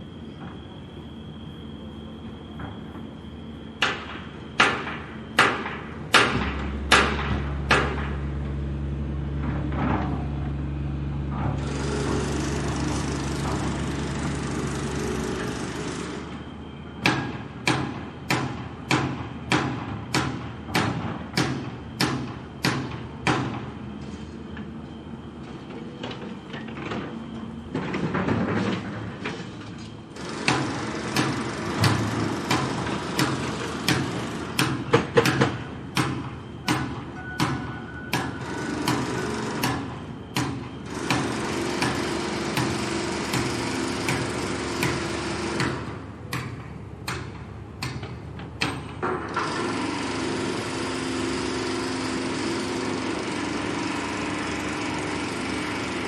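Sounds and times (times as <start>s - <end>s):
hammer blows: 2.5s - 8.6s, 30.2s - 50.9s.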